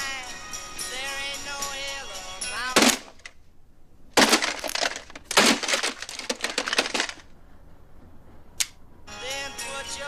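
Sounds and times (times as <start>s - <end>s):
hard object smashing: 2.7s - 3.3s, 4.2s - 7.3s
sharp click: 8.6s - 8.8s.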